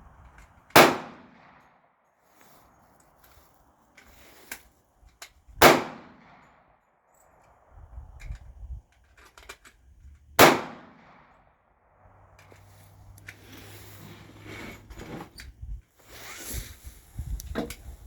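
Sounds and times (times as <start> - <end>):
gunshots: 0.8 - 1.5, 5.6 - 6.4, 10.4 - 11.2
gun handling clicks: 8.2 - 11.2, 12.3 - 13.4.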